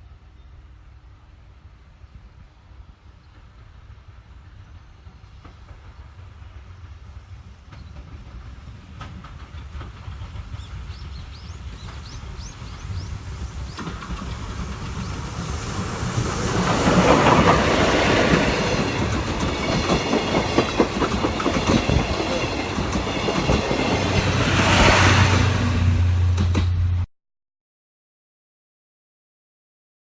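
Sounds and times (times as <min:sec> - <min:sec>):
steam train passing: 0:00.0 - 0:27.1
wheels clattering over rail joints: 0:07.7 - 0:24.9.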